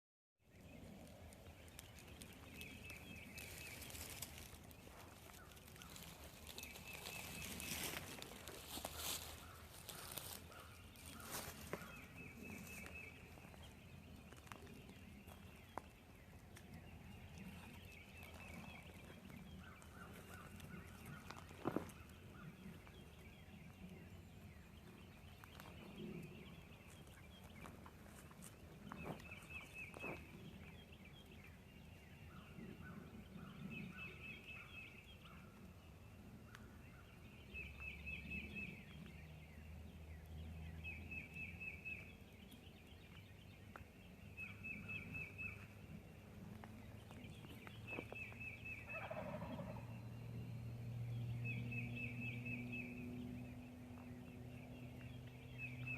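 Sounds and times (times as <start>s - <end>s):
songbird trills: 0.6s - 55.9s
turkey yelping: 48.9s - 49.8s.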